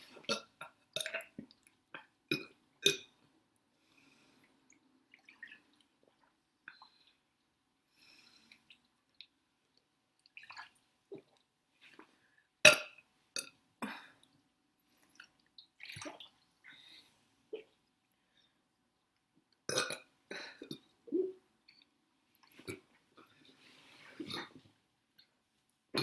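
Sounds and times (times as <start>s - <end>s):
woman burping: 19.7s - 21.4s.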